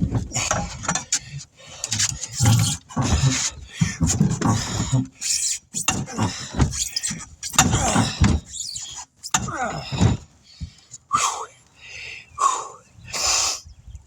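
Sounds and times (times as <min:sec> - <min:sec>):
tools knocking and scraping on tire: 0:05.8 - 0:08.6.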